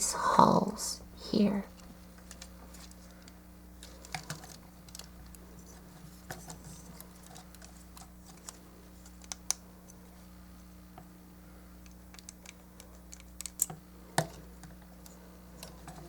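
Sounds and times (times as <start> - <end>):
plastic parts clicking: 2.2 - 5.4, 11.8 - 14.8.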